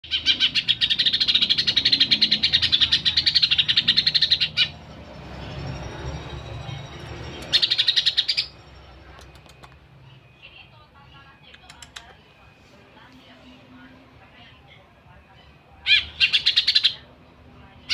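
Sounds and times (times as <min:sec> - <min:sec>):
bird singing rapid chattering notes: 0:00.0 - 0:04.9, 0:05.6 - 0:12.4, 0:15.3 - 0:17.1.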